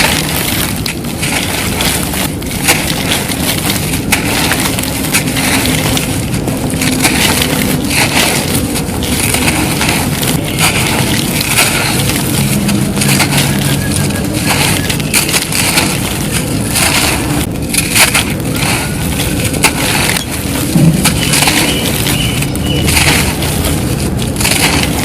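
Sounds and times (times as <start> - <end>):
concrete crunching by hand: 0.0 - 25.0.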